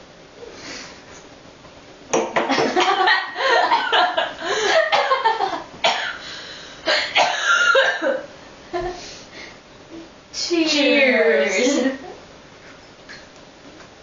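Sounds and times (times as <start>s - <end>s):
women laughing: 2.5s - 5.7s
women coughing: 4.7s - 5.2s, 5.8s - 6.2s, 6.9s - 8.3s.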